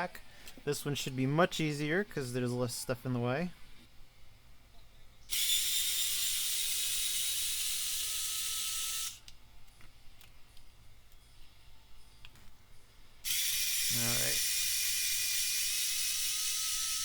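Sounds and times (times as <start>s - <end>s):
electric screwdriver whirring: 5.3s - 9.2s, 13.3s - 17.0s.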